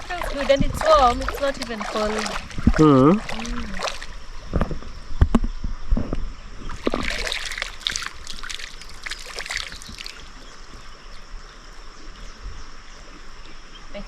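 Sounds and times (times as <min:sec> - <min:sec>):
river water flowing: 0:00.0 - 0:04.5, 0:06.7 - 0:14.0
water splashing: 0:00.0 - 0:04.8, 0:06.6 - 0:12.3.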